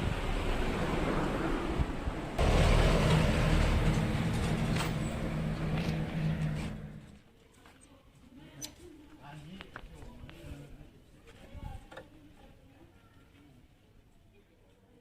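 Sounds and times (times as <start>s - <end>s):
rushing noise: 0.0s - 7.2s
engine running: 2.2s - 7.2s.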